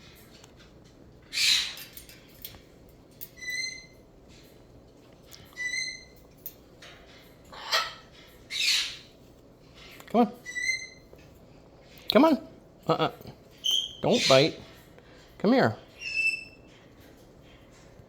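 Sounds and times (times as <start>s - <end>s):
cockatoo rasping calls: 1.3s - 1.8s, 7.5s - 9.1s.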